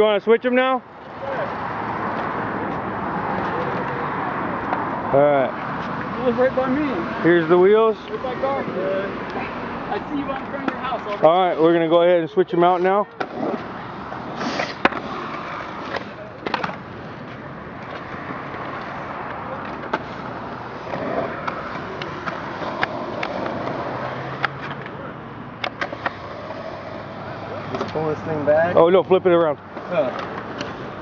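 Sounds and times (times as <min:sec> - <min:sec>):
skateboard parts clicking and knocking: 0:14.6 - 0:20.2, 0:20.8 - 0:25.0, 0:25.6 - 0:26.2, 0:29.7 - 0:30.8.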